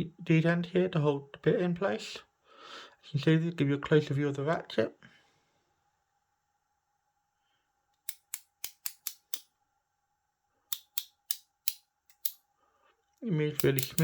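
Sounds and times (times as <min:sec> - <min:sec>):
ratchet driver clicking: 0:13.6 - 0:14.0.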